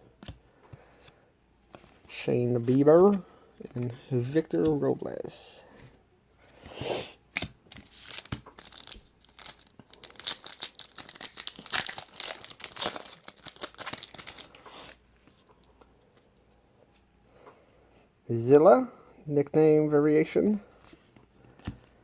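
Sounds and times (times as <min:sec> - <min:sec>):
wrapper tearing and crinkling: 0:07.8 - 0:15.0.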